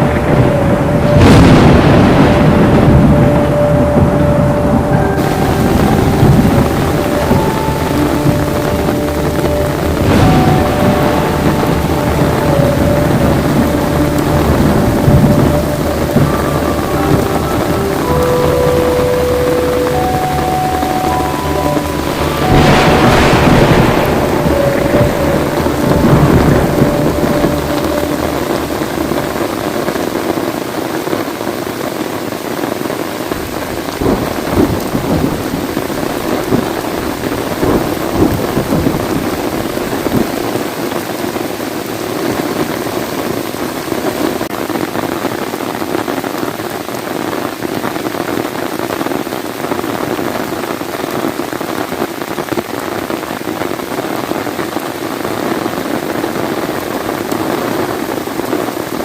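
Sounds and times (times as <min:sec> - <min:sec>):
thunder rumbling: 0:00.0 - 0:45.6
heavy rain falling: 0:00.0 - 0:59.0.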